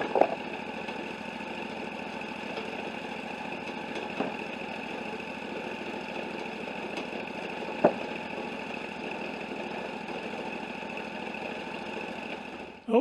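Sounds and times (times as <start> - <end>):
sawmill engine idling: 0.0 - 13.0.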